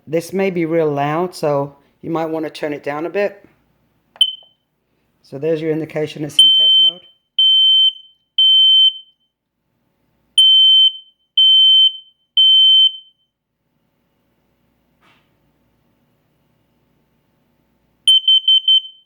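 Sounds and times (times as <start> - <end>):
smoke alarm beeps: 4.2 - 4.7, 6.4 - 9.4, 10.4 - 13.4, 18.1 - 19.0.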